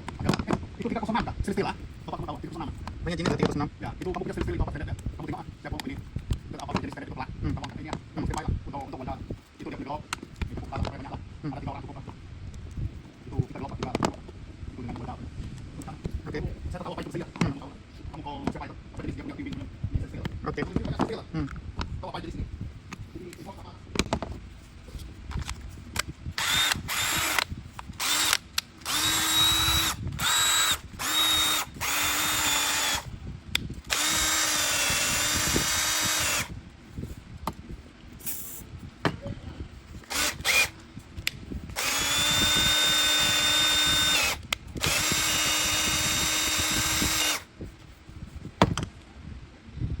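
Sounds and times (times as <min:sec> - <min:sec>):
power tool motor whining: 0:26.4 - 0:33.1, 0:33.8 - 0:36.5, 0:40.0 - 0:40.8, 0:41.7 - 0:47.5.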